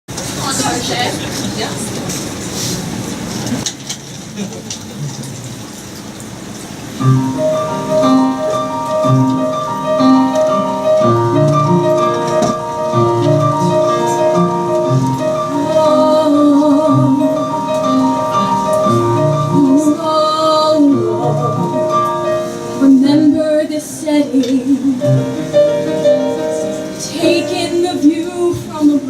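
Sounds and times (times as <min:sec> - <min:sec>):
keyboard held notes: 0:07.0 - 0:28.8.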